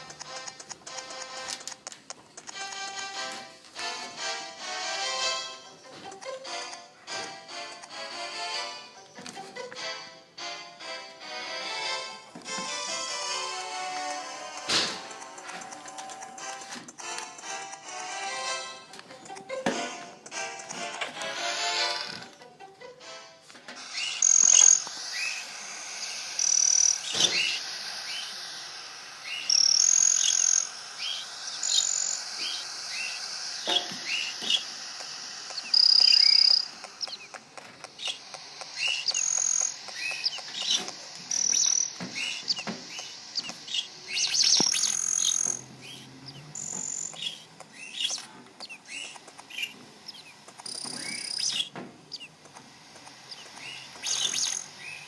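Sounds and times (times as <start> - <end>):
small birds chirping and whistling: 23.8 - 55.0.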